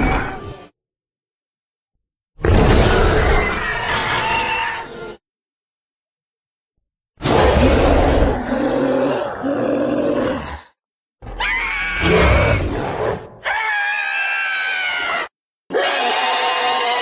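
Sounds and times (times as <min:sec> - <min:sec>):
deep growling roar: 0:07.2 - 0:10.7
long pitched creature cry: 0:11.2 - 0:12.8, 0:13.4 - 0:17.0.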